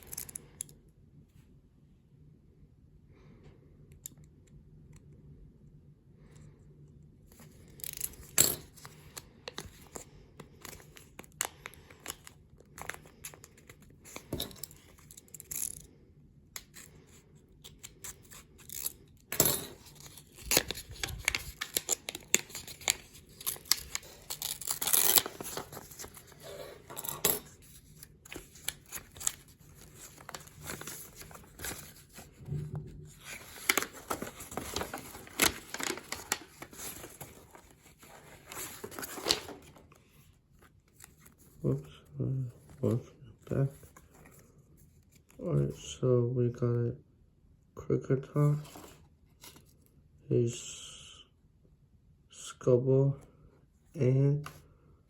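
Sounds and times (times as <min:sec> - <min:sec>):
foil wrapper tearing and crinkling: 0:19.9 - 0:26.4, 0:33.2 - 0:37.6.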